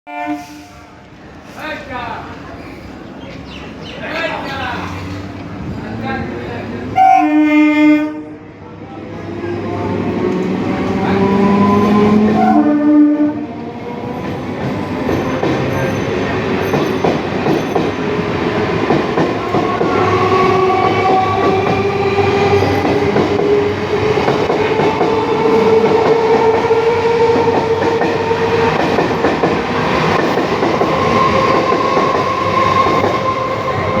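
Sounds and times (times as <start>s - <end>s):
train wheels rumbling on rails: 8.7s - 34.0s.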